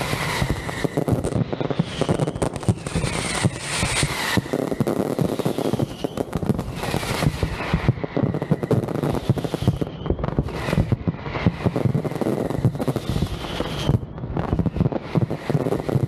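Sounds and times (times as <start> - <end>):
firework whistles: 0.0 - 16.0
fireworks bangs and crackling: 0.0 - 16.0.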